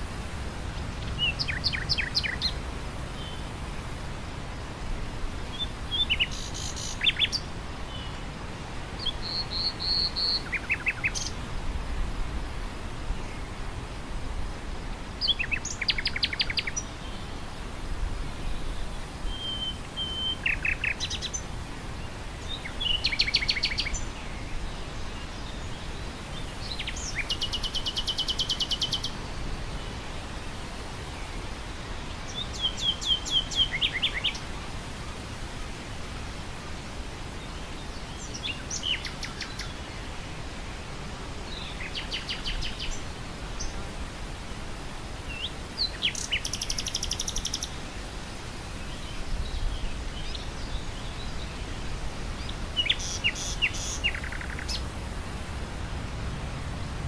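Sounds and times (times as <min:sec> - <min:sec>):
wind through grass: 0:00.0 - 0:57.0
nightingale singing: 0:01.0 - 0:02.6, 0:05.5 - 0:08.2, 0:09.0 - 0:11.4, 0:15.2 - 0:16.9, 0:19.3 - 0:21.5, 0:22.4 - 0:24.3, 0:26.6 - 0:29.2, 0:32.3 - 0:34.5, 0:38.1 - 0:39.8, 0:41.5 - 0:43.0, 0:45.3 - 0:47.8, 0:52.4 - 0:54.8.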